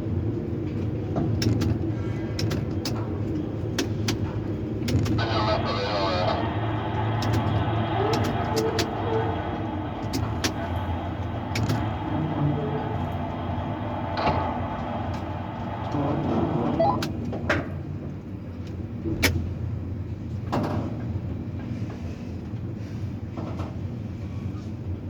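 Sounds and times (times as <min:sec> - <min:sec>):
sharp clicks and knocks: 0:02.4 - 0:03.1, 0:03.7 - 0:05.2, 0:11.5 - 0:11.9
crane machinery humming: 0:03.1 - 0:18.4.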